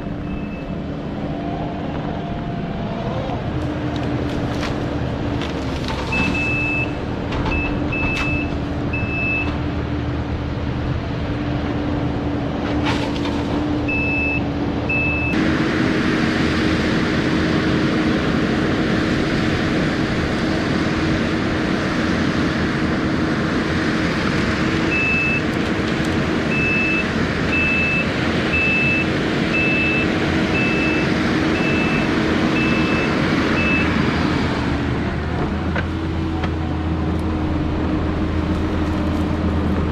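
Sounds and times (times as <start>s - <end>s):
diesel engine of heavy machinery: 0.0s - 39.9s
reversing alarm beeping: 26.5s - 34.0s.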